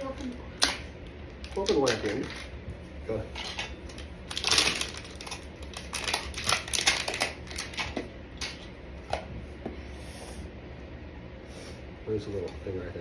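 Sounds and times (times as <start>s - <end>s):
plastic wrapping tearing and crinkling: 1.5s - 2.5s, 4.3s - 8.0s.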